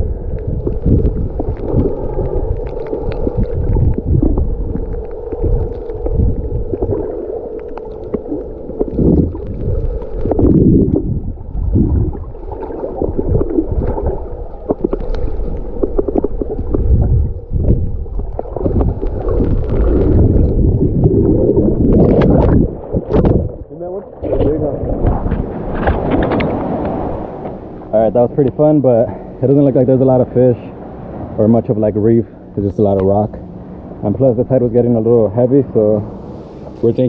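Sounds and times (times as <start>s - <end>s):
steady hum: 0.0s - 37.0s
water gurgling and sloshing: 0.0s - 37.0s.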